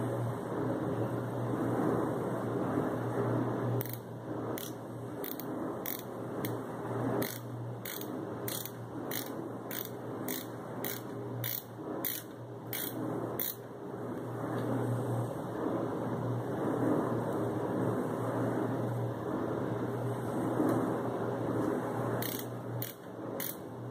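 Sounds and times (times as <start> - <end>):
steady low hum: 0.0 - 23.9
screwdriver clicking: 4.6 - 6.6, 7.2 - 13.6, 22.2 - 23.6.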